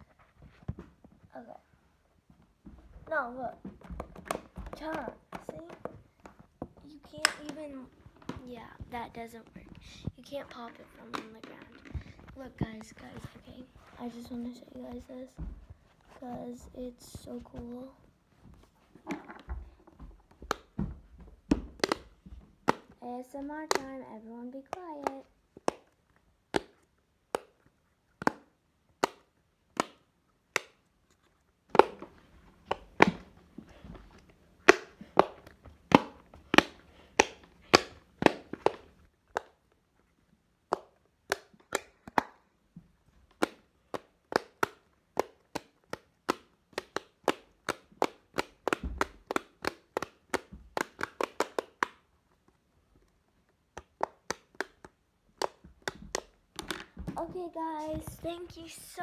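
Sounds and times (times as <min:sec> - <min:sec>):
fidget toy popping: 0:07.1 - 0:07.6, 0:21.4 - 0:23.0, 0:24.7 - 0:30.8, 0:31.7 - 0:39.7, 0:40.7 - 0:42.4, 0:43.3 - 0:52.1, 0:53.7 - 0:57.3.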